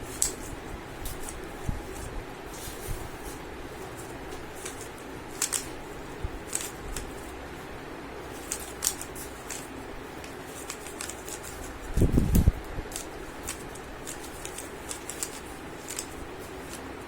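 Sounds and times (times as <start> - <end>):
puzzle cube clicking: 4.6 - 5.7, 6.5 - 7.1, 8.4 - 11.7, 12.9 - 16.8.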